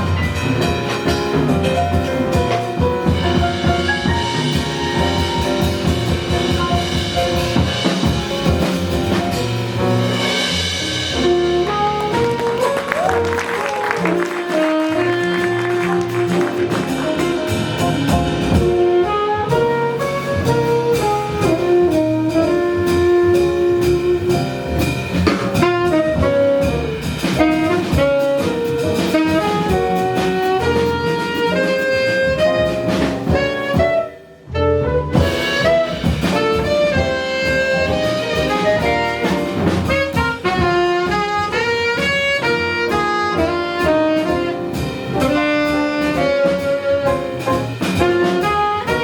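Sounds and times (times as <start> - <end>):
drum kit with busy cymbals: 0.0 - 34.5, 35.1 - 49.0
bass: 0.0 - 49.0
piano: 0.0 - 49.0
saxophone melody: 11.2 - 24.6, 25.6 - 49.0.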